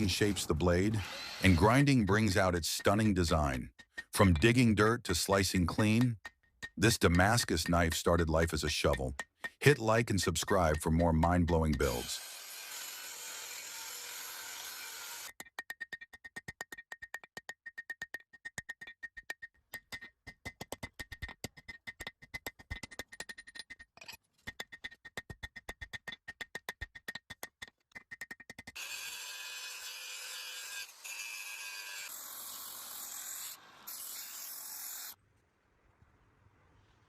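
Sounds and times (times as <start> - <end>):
steady grinding noise: 0.0 - 15.4.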